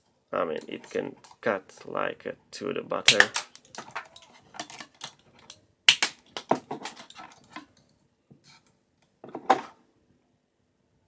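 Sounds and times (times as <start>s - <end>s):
wire cutters snapping wire: 3.1s - 4.2s, 5.0s - 6.6s
tool rattling: 3.1s - 7.6s.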